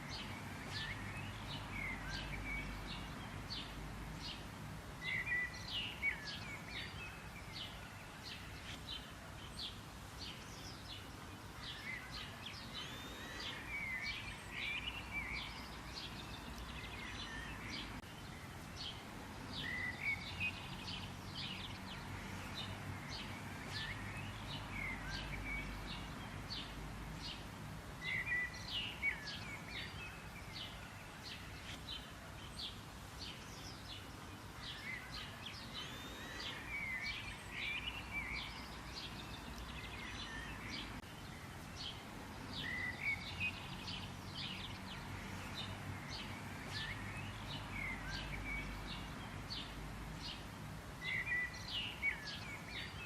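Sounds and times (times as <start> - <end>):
birds chirping: 0.0 - 53.0.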